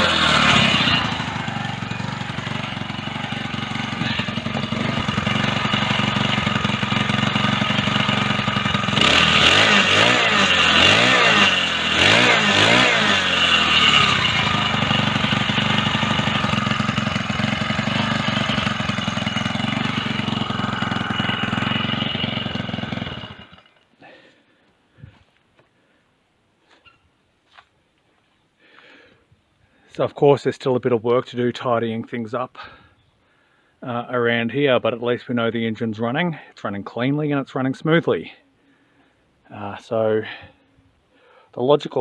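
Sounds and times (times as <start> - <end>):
small petrol engine revving: 0.0 - 24.2.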